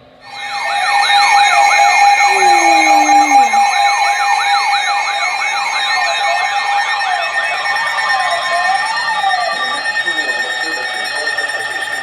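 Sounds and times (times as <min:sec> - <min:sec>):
electronic siren yelping and wailing: 0:02.2 - 0:03.8.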